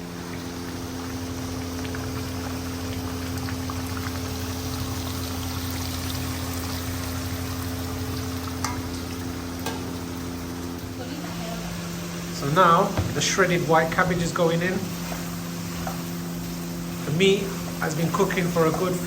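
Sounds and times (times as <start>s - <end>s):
pot of water boiling: 0.0s - 19.0s.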